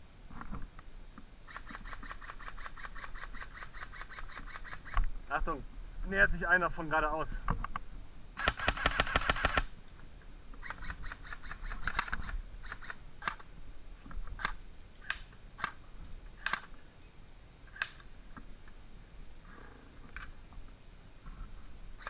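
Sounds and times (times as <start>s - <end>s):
airsoft guns firing: 8.4s - 9.8s.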